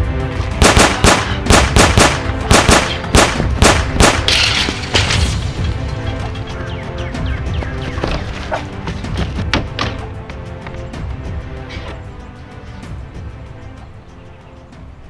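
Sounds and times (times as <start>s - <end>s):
action background music: 0.0s - 15.0s
gunshots: 0.4s - 5.8s.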